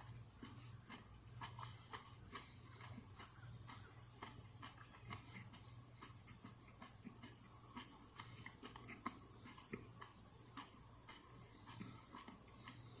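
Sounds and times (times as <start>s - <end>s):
chewing with wet crunches: 0.0s - 13.0s
faint low hum: 0.0s - 13.0s.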